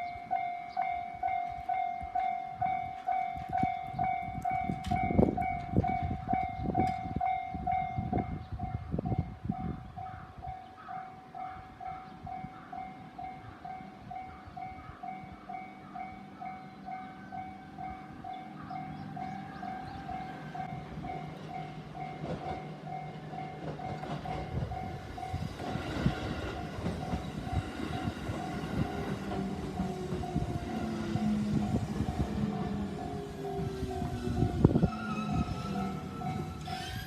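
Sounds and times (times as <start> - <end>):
train rumbling and rattling: 0.0 - 10.5, 11.4 - 37.0
level-crossing bell dinging: 26.6 - 37.0.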